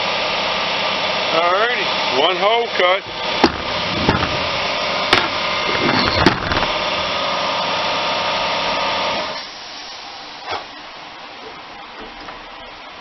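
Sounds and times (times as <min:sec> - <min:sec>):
motor running steadily: 0:00.0 - 0:09.4
sharp knocks: 0:03.1 - 0:06.8.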